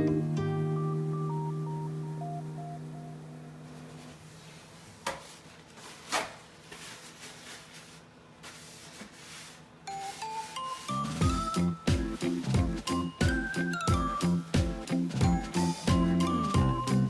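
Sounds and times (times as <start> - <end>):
background music: 0.0 - 3.9, 9.9 - 17.0
plucked melody: 0.0 - 3.9, 10.7 - 17.0.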